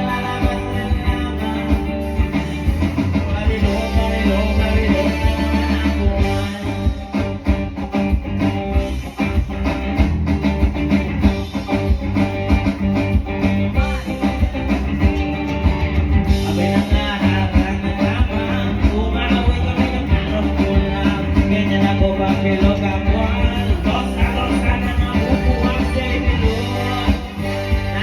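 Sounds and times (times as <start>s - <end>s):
person singing: 0.0s - 7.5s, 13.6s - 15.4s, 16.3s - 28.0s
live rock band playing: 0.0s - 28.0s.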